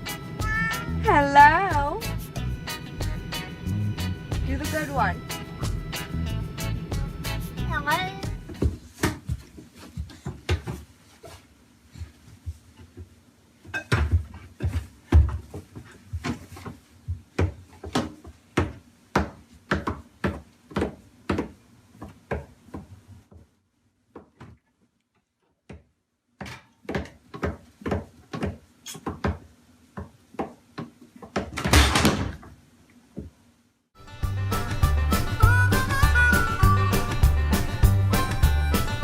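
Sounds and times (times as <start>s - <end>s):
noisy scuffle: 8.0s - 13.2s
irregular knocks and taps: 25.6s - 31.6s.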